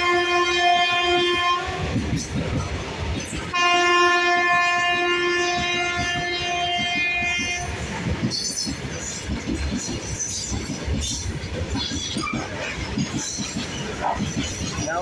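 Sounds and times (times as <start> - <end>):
locomotive horn chord: 0.0 - 1.8, 3.5 - 7.8
train wagons rumbling and clattering: 0.0 - 15.0.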